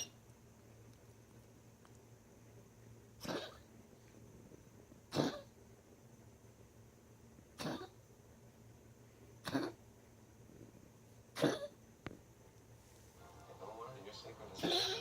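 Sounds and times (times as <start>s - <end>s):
dog coughing: 3.2s - 3.7s, 5.1s - 5.6s, 7.5s - 8.0s, 9.4s - 9.8s, 11.3s - 11.8s, 14.6s - 15.0s.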